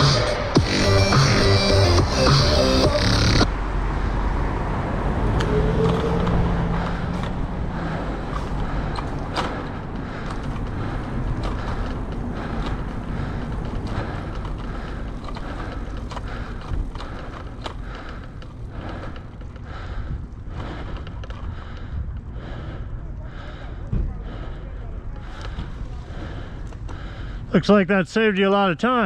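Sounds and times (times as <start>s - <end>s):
motor vehicle engine passing: 0.0s - 21.1s.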